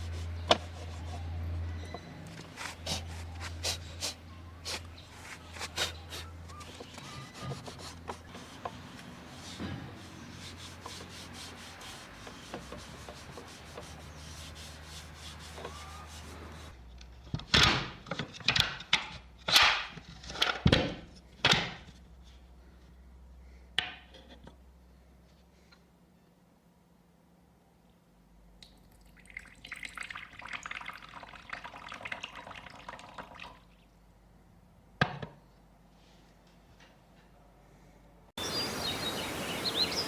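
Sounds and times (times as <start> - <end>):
hand sanding wooden tabletop: 7.0 - 16.8
loud short sanding strokes: 7.0 - 16.8.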